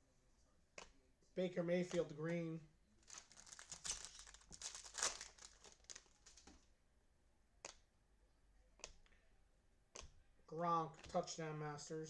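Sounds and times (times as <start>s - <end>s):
foil wrapper crinkling: 3.0s - 6.6s.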